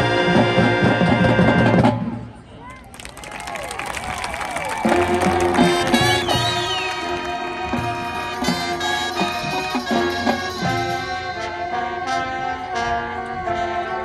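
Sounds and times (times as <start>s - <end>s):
brass sustained chords: 4.8s - 14.0s.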